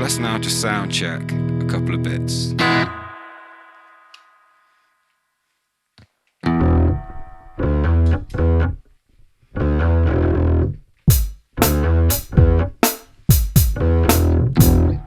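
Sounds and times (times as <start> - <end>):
electric guitar chord stabs: 0.0 - 4.5
sharp rhythmic hits: 11.1 - 14.9.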